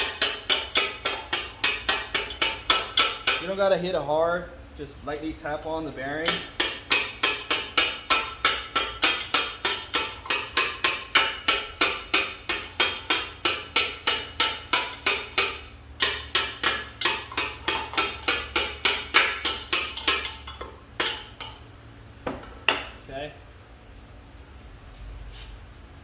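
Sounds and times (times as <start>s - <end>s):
hammer tapping metal punch: 0.0s - 3.6s, 6.2s - 23.0s.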